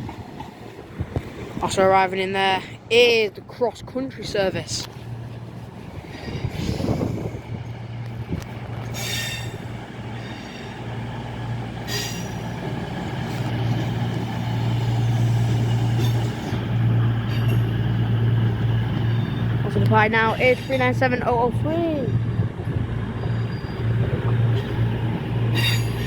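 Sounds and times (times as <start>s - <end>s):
diesel train engine hum: 0.0s - 26.0s
high wheel squeals: 8.9s - 11.0s, 11.8s - 12.7s, 18.8s - 21.0s, 23.0s - 26.0s.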